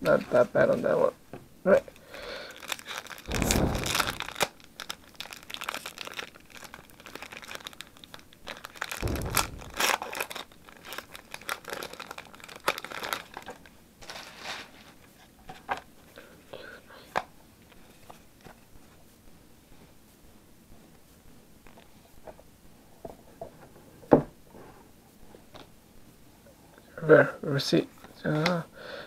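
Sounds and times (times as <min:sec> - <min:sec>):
foil wrapper crinkling: 0:01.9 - 0:14.7
wrapper tearing: 0:02.4 - 0:14.3.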